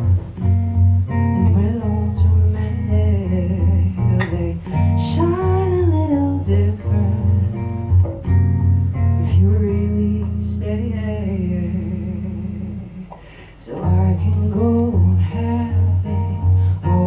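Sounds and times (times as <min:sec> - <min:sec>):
acoustic guitar strumming chords: 0:00.0 - 0:17.0
person singing: 0:01.2 - 0:07.8, 0:09.2 - 0:17.0.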